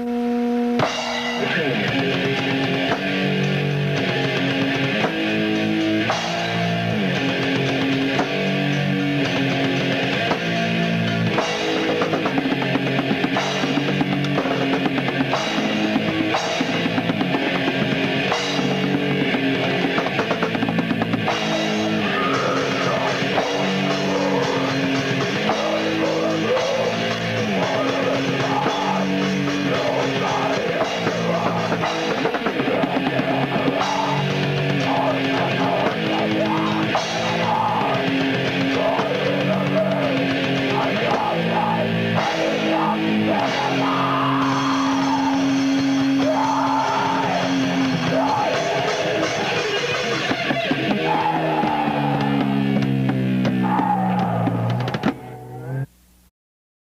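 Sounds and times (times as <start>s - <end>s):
distorted electric guitar riff: 0.0s - 56.3s
fast drum kit playing: 0.8s - 55.4s.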